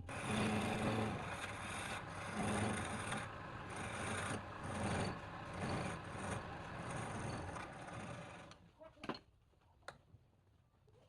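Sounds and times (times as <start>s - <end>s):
lathe motor hum: 0.0s - 8.6s
tool rasping on spinning wood: 0.0s - 8.6s.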